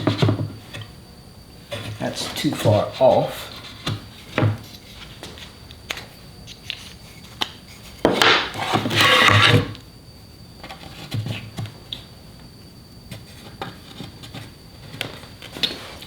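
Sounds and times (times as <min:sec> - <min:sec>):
wood scraping on wood: 0:01.6 - 0:05.6, 0:06.5 - 0:09.8.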